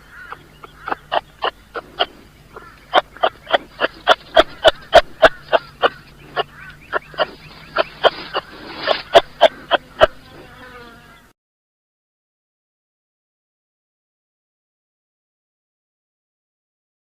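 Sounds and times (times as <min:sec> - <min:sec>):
kangaroo calling: 0:00.0 - 0:11.1.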